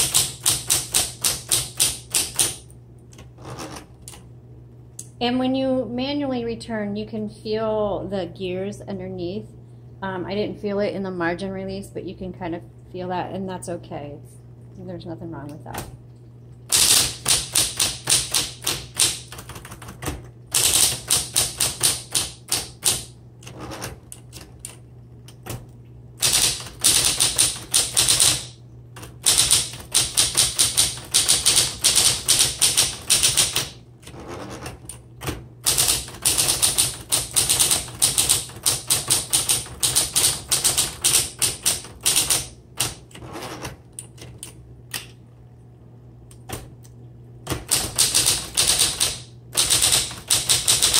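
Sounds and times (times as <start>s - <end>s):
typewriter key strikes: 0.0s - 2.6s, 16.7s - 24.8s, 26.2s - 33.8s, 34.5s - 43.0s, 47.5s - 50.9s
typewriter motor humming: 0.0s - 4.2s, 16.6s - 45.2s, 47.4s - 50.9s.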